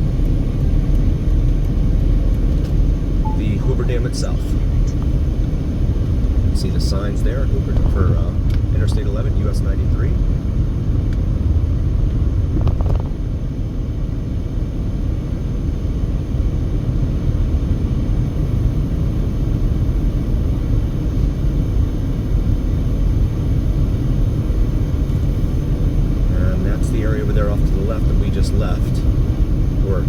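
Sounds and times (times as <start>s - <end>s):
car road noise: 0.0s - 30.0s.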